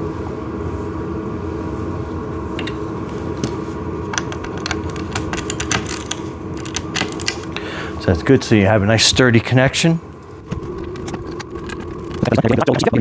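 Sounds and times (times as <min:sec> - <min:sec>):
steady background hum: 0:00.0 - 0:13.0
fastener clicks and knocks: 0:04.1 - 0:07.6.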